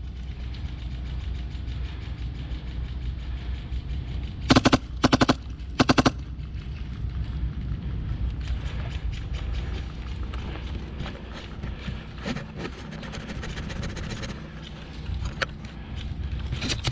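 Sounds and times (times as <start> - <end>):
rapid clicking of airsoft fire: 4.2 - 6.7
airsoft gun full-auto bursts: 4.5 - 6.3.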